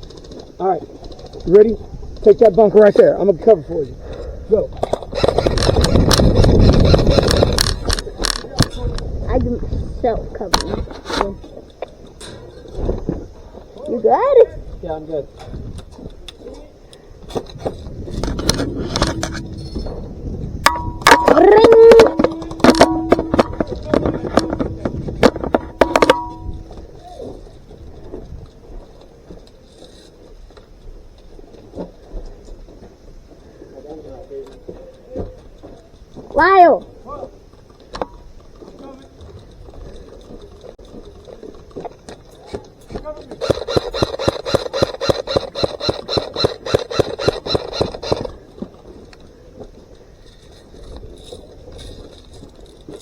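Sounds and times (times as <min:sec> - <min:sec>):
metallic ringing tone: 0:19.0 - 0:27.0
bbs hitting metal: 0:20.6 - 0:27.0
loose gear rattling: 0:43.1 - 0:48.4, 0:50.2 - 0:53.0
airsoft gun shots: 0:43.4 - 0:48.3.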